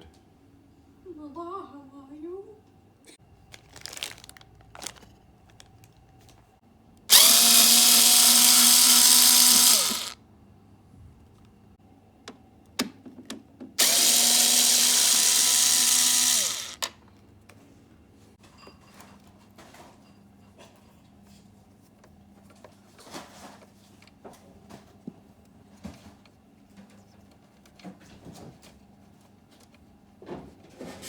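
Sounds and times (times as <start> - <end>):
power drill motor spinning: 7.1 - 10.2, 13.8 - 16.9.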